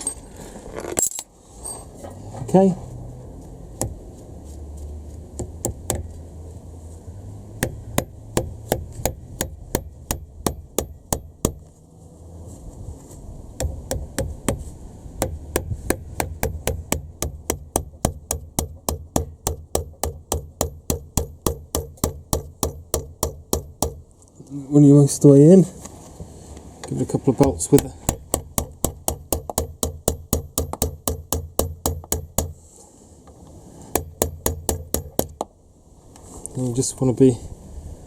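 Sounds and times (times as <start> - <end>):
hammer tapping metal punch: 7.6 - 11.7, 15.2 - 24.1, 27.4 - 32.6, 33.9 - 35.5.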